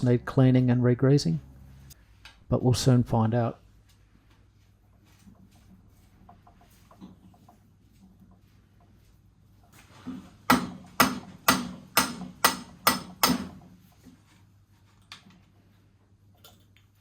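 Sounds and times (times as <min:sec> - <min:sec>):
hammer striking metal: 0:10.5 - 0:13.6.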